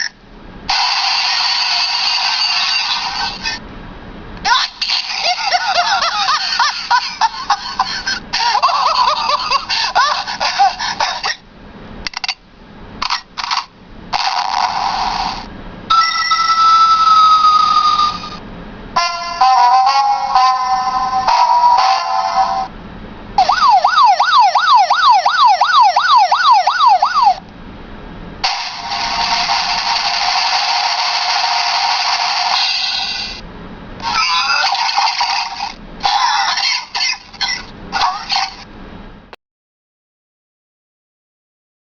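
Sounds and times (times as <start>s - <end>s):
noisy electronic bursts: 28.4s - 33.4s.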